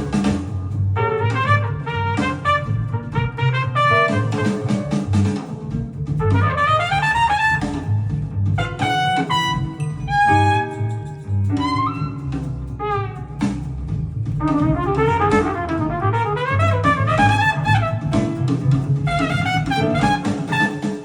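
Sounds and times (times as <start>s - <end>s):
jazz with brass horns: 0.0s - 21.0s.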